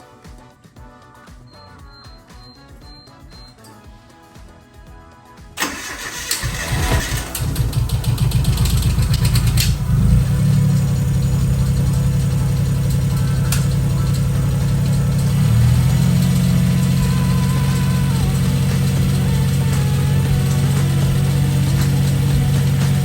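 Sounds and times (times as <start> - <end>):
engine lifters clattering: 5.6 - 23.0
small engine idling: 5.6 - 23.0.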